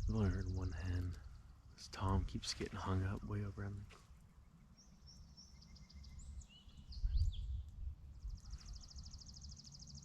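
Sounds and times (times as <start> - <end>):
low rumble on microphone: 0.0 - 3.9, 6.2 - 9.5
songbirds chirping: 0.0 - 10.0.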